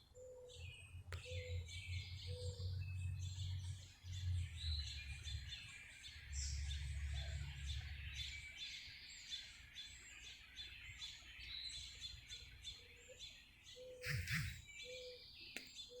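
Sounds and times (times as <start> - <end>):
songbirds chirping: 0.0 - 16.0
short low notes: 14.0 - 14.6.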